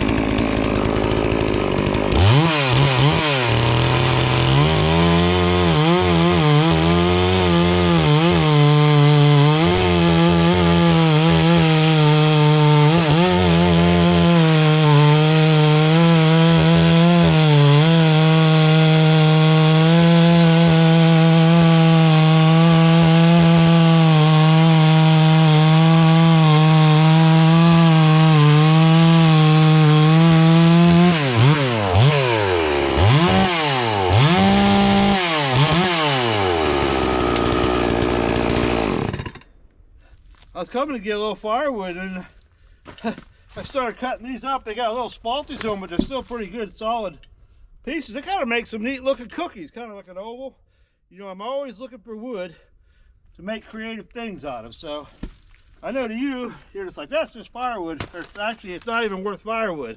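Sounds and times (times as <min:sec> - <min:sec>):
chainsaw cutting log: 0:00.0 - 0:39.6, 0:57.9 - 0:59.3.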